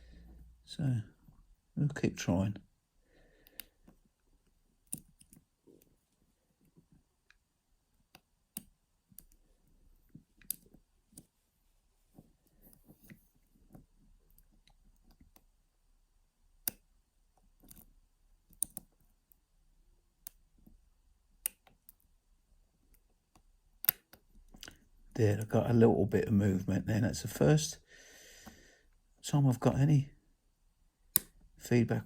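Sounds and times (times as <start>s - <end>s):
faint handling rustle: 9.4s - 14.6s.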